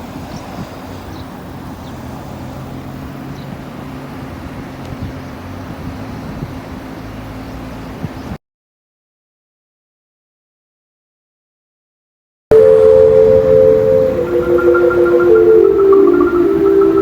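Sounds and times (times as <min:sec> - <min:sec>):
faint high chirps: 0:12.5 - 0:17.0.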